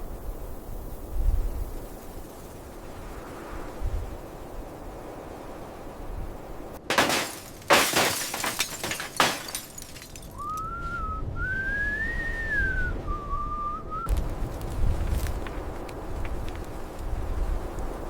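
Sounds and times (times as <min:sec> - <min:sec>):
loud crashes: 0:06.9 - 0:10.3
wavering whistle: 0:10.4 - 0:14.1.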